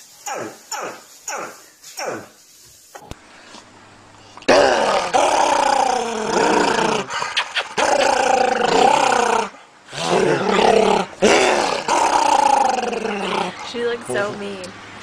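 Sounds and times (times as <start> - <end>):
dog growling: 4.4 - 14.6.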